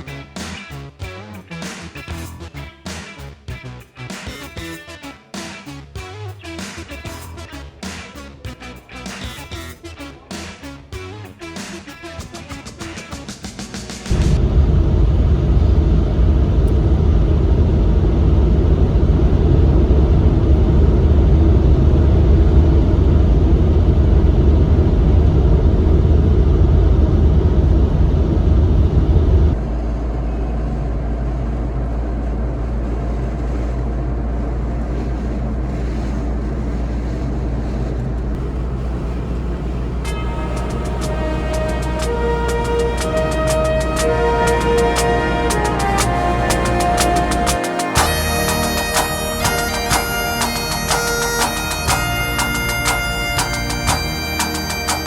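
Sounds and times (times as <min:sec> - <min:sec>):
car engine and road rumble: 0:13.5 - 0:55.0.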